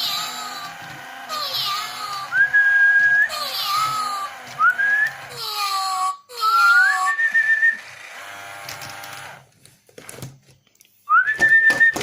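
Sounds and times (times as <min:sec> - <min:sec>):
toy clicks: 0:00.0 - 0:09.4.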